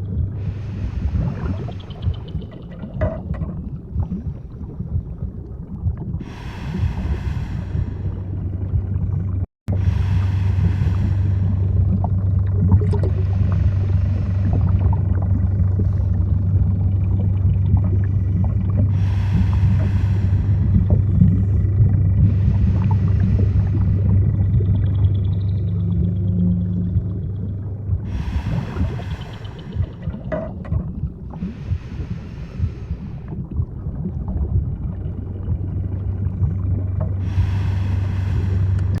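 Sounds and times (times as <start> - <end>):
small underwater clicks and pops: 0.0 - 9.4, 10.7 - 39.0
steady low hum: 0.0 - 39.0
underwater low rumble: 0.0 - 39.0
hiss: 9.8 - 11.6, 19.0 - 20.7, 28.1 - 30.1, 37.2 - 39.0.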